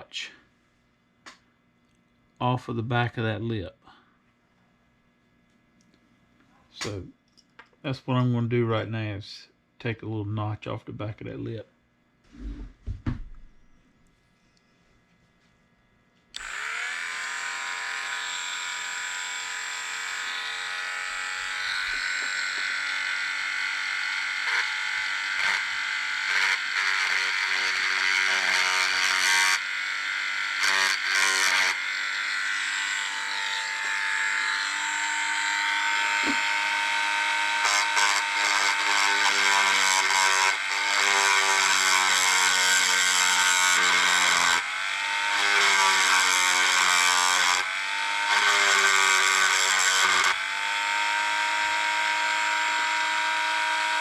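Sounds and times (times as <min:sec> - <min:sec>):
rotary tool whining while cutting plastic: 0:16.4 - 0:54.0.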